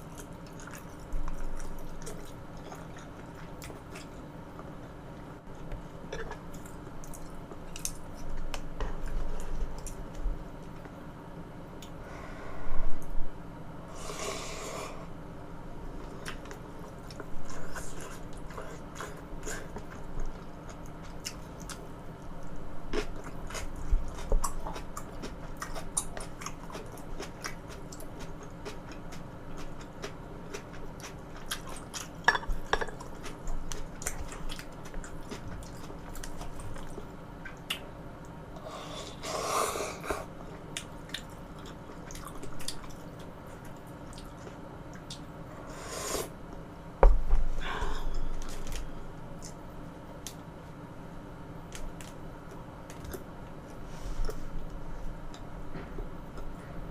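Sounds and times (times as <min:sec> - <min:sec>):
person chewing food: 0:00.0 - 0:04.8, 0:05.5 - 0:10.9, 0:16.0 - 0:37.8, 0:38.6 - 0:46.3, 0:47.6 - 0:50.4
person breathing: 0:12.0 - 0:13.0, 0:13.9 - 0:15.2, 0:47.5 - 0:48.4.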